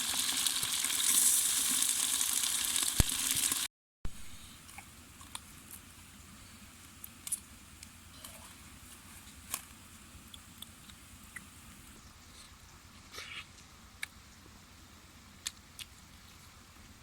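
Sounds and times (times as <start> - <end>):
low steady hum: 4.1 - 17.0.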